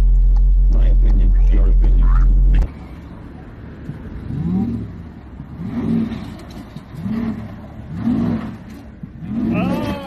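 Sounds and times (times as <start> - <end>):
vehicle engine revving: 3.8 - 10.0.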